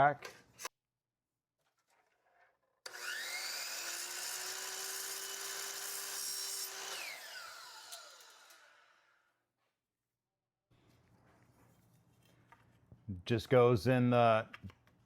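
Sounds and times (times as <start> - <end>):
chop saw cutting aluminum: 2.8 - 9.1.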